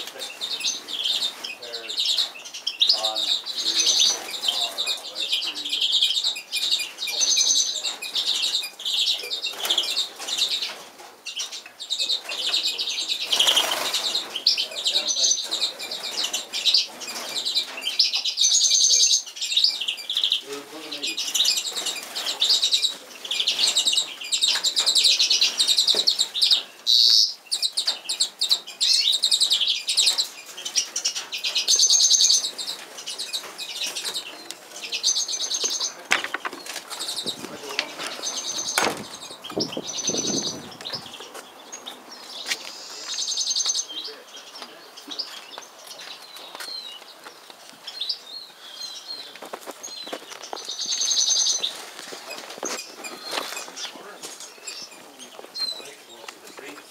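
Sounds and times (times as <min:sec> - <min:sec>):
magpies chattering: 0:00.0 - 0:56.9
low thumps: 0:38.6 - 0:41.4.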